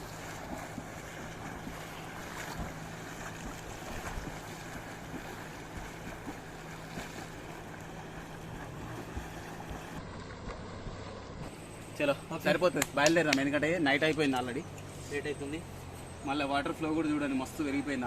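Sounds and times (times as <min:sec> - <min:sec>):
rushing water: 0:00.0 - 0:11.3
small splashes: 0:00.0 - 0:11.6.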